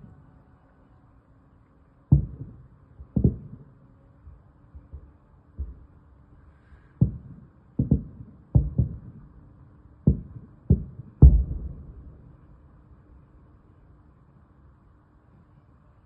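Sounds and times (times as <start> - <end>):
fireworks bangs echoing: 10.1 - 12.4.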